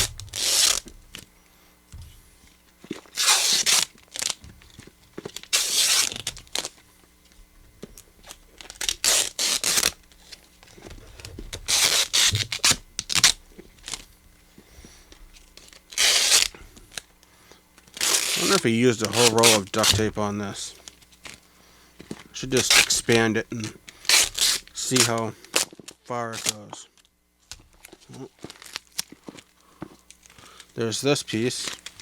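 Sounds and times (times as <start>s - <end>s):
duct tape tearing: 0.0s - 1.3s, 2.9s - 6.8s, 7.9s - 14.1s, 15.4s - 17.1s, 17.8s - 21.4s, 22.4s - 29.5s, 31.4s - 32.0s.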